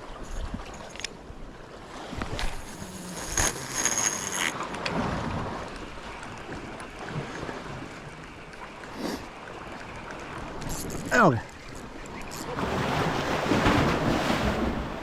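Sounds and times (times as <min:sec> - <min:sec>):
sea waves washing on shore: 0:01.0 - 0:15.0
fishing reel whirring: 0:02.3 - 0:12.6.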